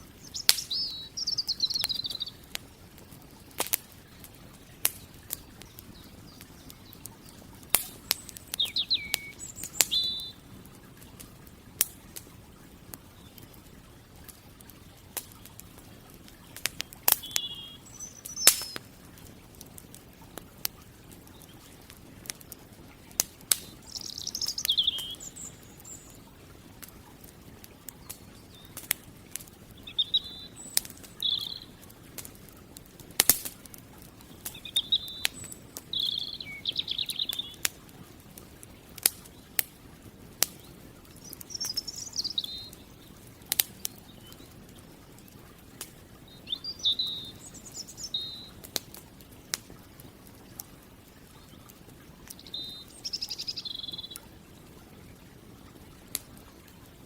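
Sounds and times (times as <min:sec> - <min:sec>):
songbird warbling: 0:00.0 - 0:02.6, 0:04.4 - 0:10.4, 0:16.4 - 0:18.9, 0:23.6 - 0:26.3, 0:29.7 - 0:31.8, 0:34.4 - 0:37.8, 0:40.6 - 0:43.1, 0:46.2 - 0:48.6, 0:52.3 - 0:54.2
campfire crackling and popping: 0:00.0 - 0:57.0.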